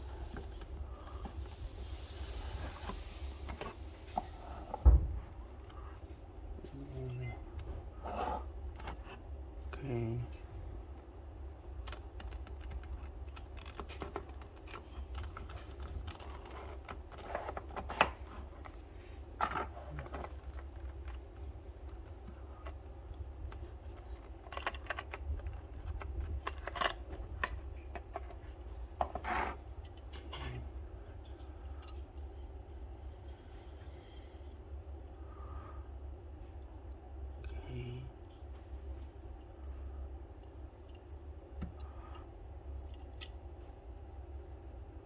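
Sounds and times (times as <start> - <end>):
low steady hum: 0.0 - 45.0
plastic packaging clicks and rustles: 11.6 - 29.2.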